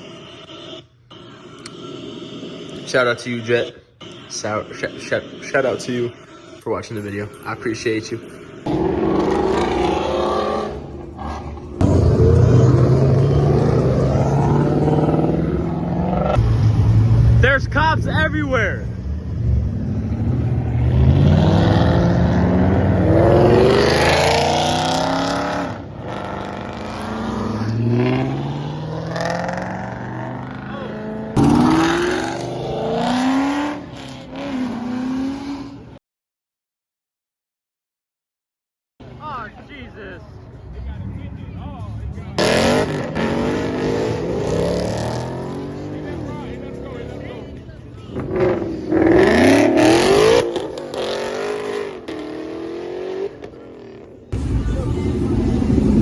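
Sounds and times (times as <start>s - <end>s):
loud steady engine note: 0.0s - 6.5s, 8.6s - 17.7s
car engine revving: 0.0s - 36.0s, 42.2s - 56.0s.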